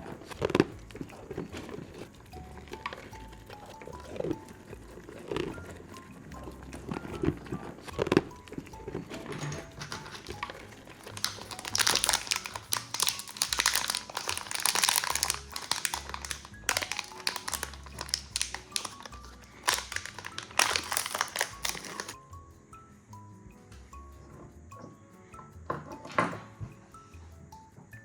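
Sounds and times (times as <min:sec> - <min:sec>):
wrapping crinkling and rustling: 0:00.0 - 0:22.2
light background music: 0:00.0 - 0:28.0.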